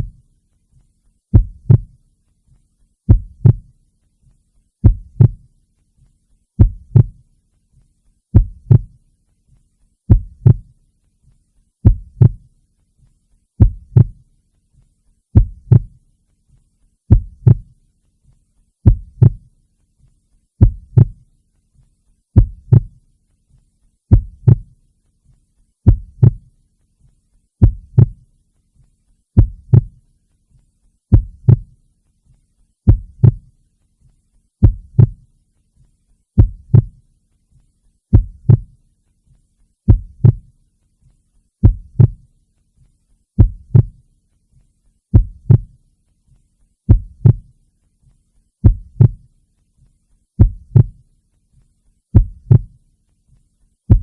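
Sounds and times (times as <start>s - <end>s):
heartbeat double thump: 1.3s - 2.0s, 3.1s - 3.7s, 4.8s - 5.4s, 6.6s - 7.2s, 8.4s - 9.0s, 10.1s - 10.7s, 11.8s - 12.4s, 13.6s - 14.2s, 15.4s - 16.0s, 17.1s - 17.7s, 18.9s - 19.5s, 20.6s - 21.2s, 22.4s - 23.0s, 24.1s - 24.7s, 25.9s - 26.5s, 27.6s - 28.2s, 29.4s - 30.0s, 31.1s - 31.7s, 32.9s - 33.5s, 34.6s - 35.2s, 36.4s - 37.0s, 38.1s - 38.7s, 39.9s - 40.5s, 41.6s - 42.2s, 43.4s - 44.0s, 45.2s - 45.8s, 46.9s - 47.5s, 48.6s - 49.2s, 50.4s - 51.0s, 52.2s - 52.7s.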